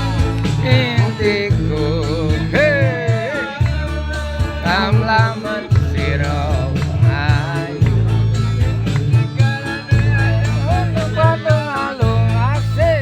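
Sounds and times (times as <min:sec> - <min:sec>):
person singing: 0:00.0 - 0:08.2, 0:09.4 - 0:13.0
instrumental backing with bass: 0:00.0 - 0:13.0.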